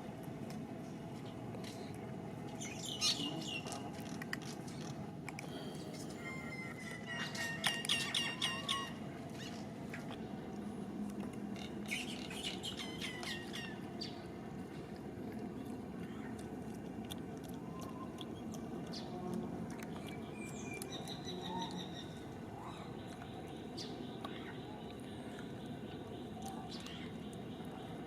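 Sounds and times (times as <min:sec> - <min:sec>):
high-pitched chirping calls: 0:06.0 - 0:09.6.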